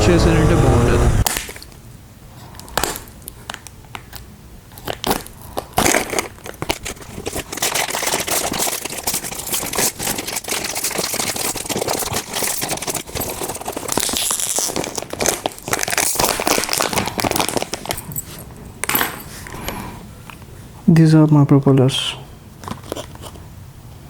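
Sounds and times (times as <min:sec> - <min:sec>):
packaging crinkling: 0:02.4 - 0:19.6, 0:22.6 - 0:23.5.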